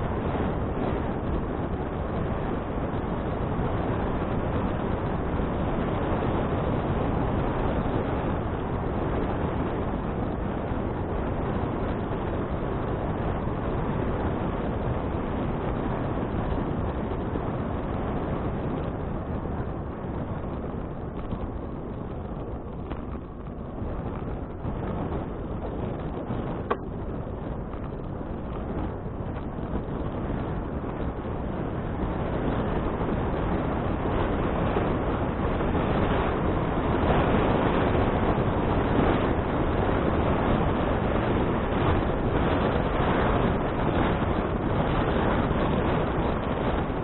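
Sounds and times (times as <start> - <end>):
wind rumbling on microphone: 0.0 - 47.0.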